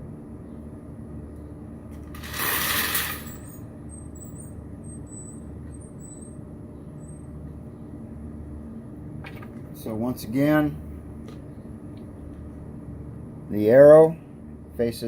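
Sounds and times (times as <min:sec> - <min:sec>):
steady low hum: 0:00.0 - 0:15.0
mechanical rattle of wheel parts: 0:02.0 - 0:04.5.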